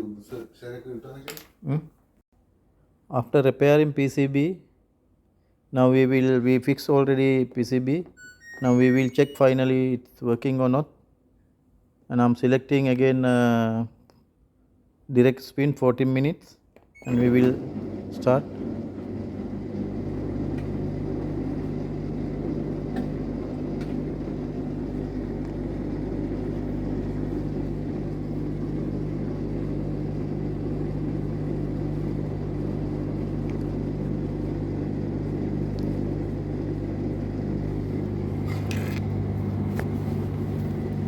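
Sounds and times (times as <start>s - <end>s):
washing machine drain pump humming: 17.0s - 41.0s.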